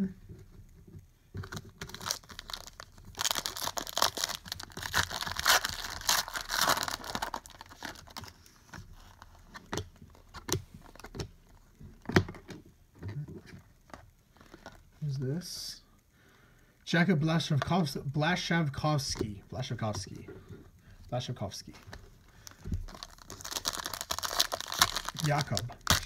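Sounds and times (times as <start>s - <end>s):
foil wrapper tearing: 1.6s - 8.3s, 22.4s - 26.0s
cards clicking and rustling: 21.7s - 26.0s.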